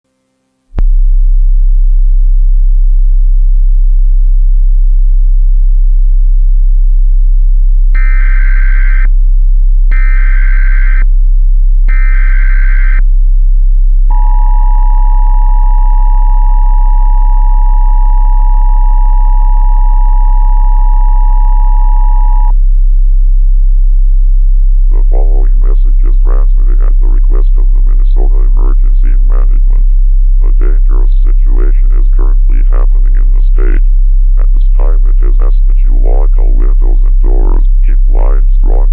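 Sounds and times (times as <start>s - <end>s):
loud low hum: 0.7s - 38.9s
digital header bursts: 8.0s - 9.1s, 9.9s - 11.0s, 11.9s - 13.0s
person speaking: 24.9s - 38.9s.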